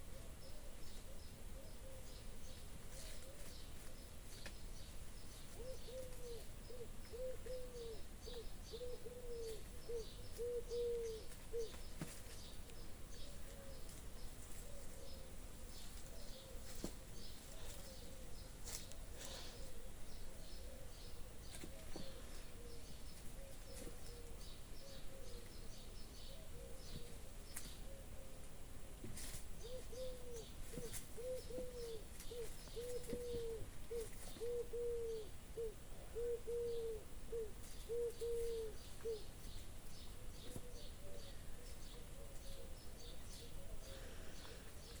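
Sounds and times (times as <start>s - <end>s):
small birds chirping: 0.0s - 45.0s
bird hooting low notes: 5.5s - 11.8s, 29.6s - 39.3s, 40.2s - 45.0s.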